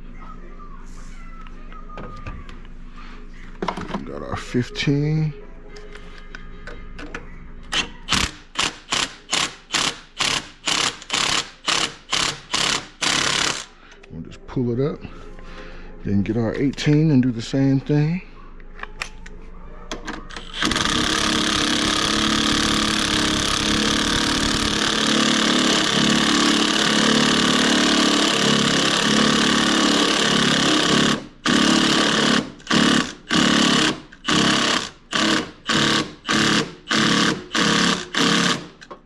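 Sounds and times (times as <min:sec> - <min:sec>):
impact wrench hammering: 0:07.8 - 0:13.8, 0:20.3 - 0:38.9.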